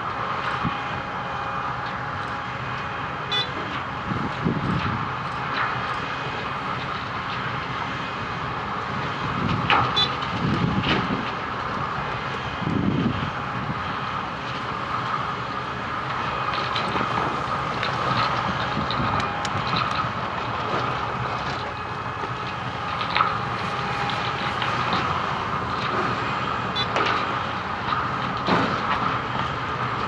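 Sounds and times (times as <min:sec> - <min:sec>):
milling machine rumbling: 0:00.0 - 0:30.0
clatter and knocks: 0:27.9 - 0:29.1.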